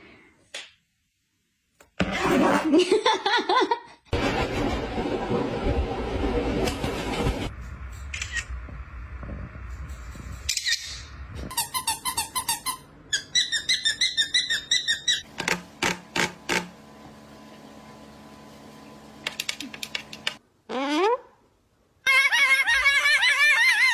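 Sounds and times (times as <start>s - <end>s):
parrot high chirping beeps: 11.5s - 15.2s.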